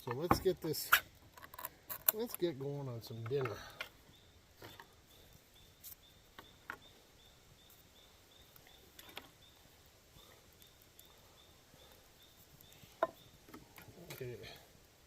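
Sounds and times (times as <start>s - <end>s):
gear handling clicks and knocks: 1.4s - 2.4s
insect chirping: 3.0s - 14.6s.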